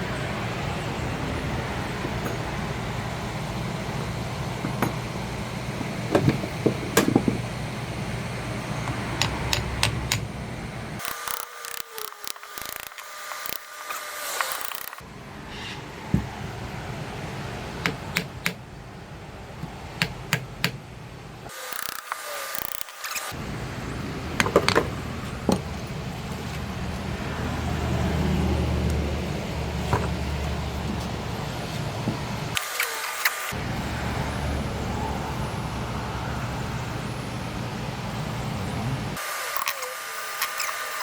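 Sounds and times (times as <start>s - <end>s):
tools and metal parts clicking: 11.0s - 15.0s, 21.7s - 23.3s.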